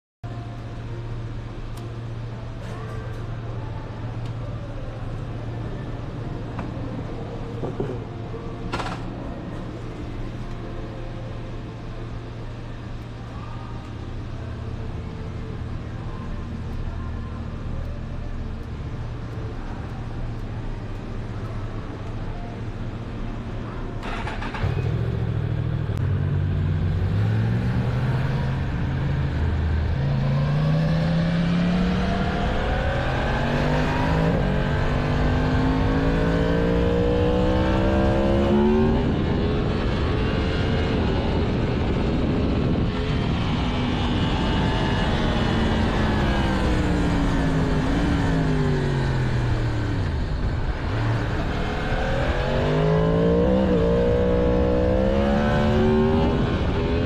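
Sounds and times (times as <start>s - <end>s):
motorcycle engine revving through gears: 24.0s - 57.0s
wind rush: 39.0s - 47.2s.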